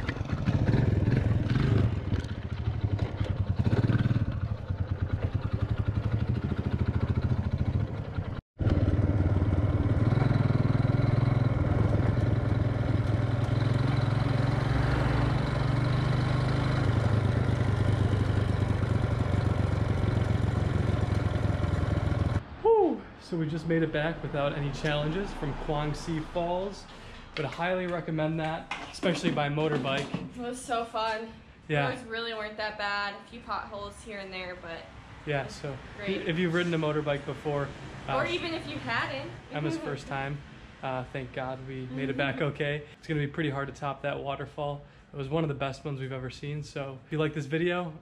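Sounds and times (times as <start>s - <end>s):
motor scooter engine running: 0.0s - 22.4s.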